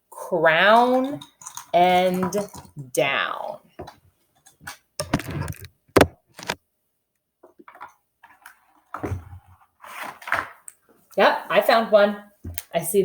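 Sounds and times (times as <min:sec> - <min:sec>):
light clicks and knocks: 0:05.0 - 0:06.6.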